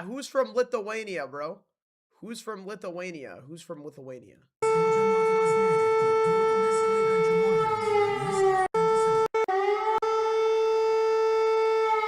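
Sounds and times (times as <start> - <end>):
civil defense siren: 4.6 - 12.0.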